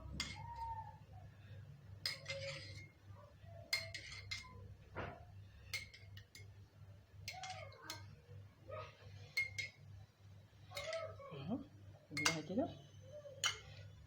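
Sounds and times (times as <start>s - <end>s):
metal spoon clinking on dish: 0.0s - 0.6s, 2.0s - 3.0s, 3.7s - 4.6s, 5.7s - 6.6s, 7.2s - 8.1s, 9.2s - 9.8s, 10.7s - 11.2s, 12.1s - 14.0s.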